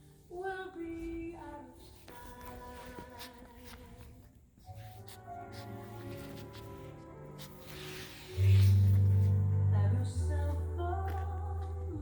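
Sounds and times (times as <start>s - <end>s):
faint background music: 0.0s - 12.0s.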